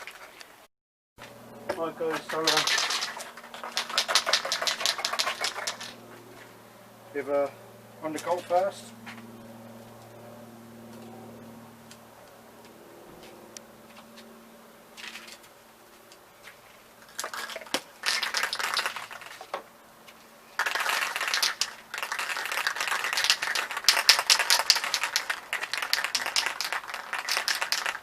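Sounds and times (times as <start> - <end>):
spray can ball rattling: 1.9 - 6.0, 17.0 - 19.6, 20.6 - 28.0.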